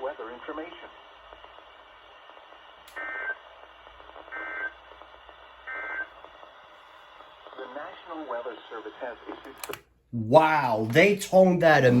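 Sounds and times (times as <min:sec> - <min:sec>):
radio hiss: 0:00.0 - 0:12.0
click: 0:09.5 - 0:09.8.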